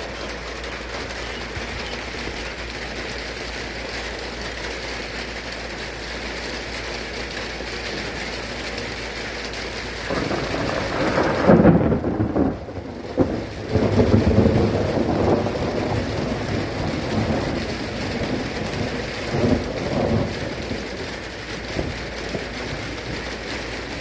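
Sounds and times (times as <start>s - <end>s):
steady rain: 0.0s - 24.0s
thunder rumbling: 10.0s - 24.0s.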